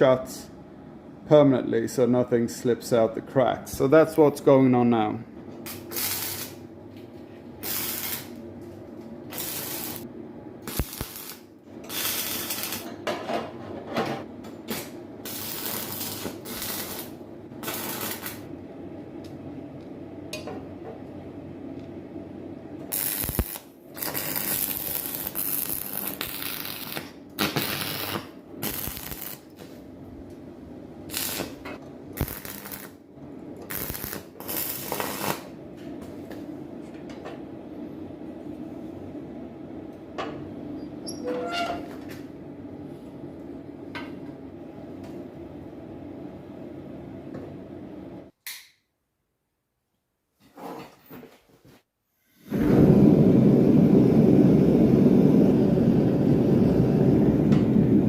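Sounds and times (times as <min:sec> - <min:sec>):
welding arc crackling: 0:05.7 - 0:06.6, 0:07.6 - 0:08.4, 0:09.3 - 0:12.9, 0:14.7 - 0:18.5, 0:22.9 - 0:29.6, 0:31.1 - 0:33.0, 0:33.6 - 0:35.5
low hum: 0:52.5 - 0:58.0.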